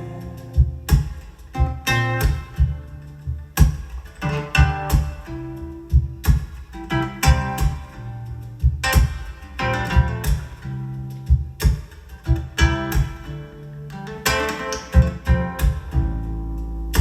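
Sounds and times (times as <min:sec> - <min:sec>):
bass: 0:00.0 - 0:14.4, 0:15.0 - 0:17.0
drum beats: 0:00.0 - 0:17.0
plucked acoustic guitar: 0:00.0 - 0:17.0.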